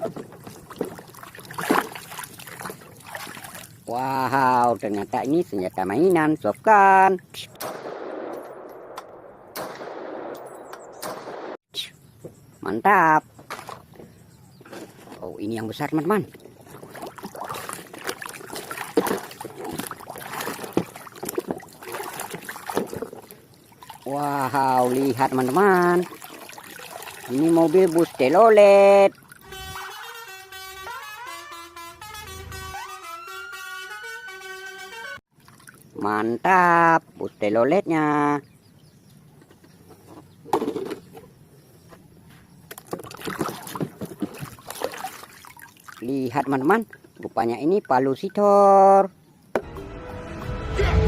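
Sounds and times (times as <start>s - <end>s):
water splashing and sloshing: 0.0s - 7.4s, 13.4s - 32.7s, 35.3s - 36.4s, 42.6s - 48.4s.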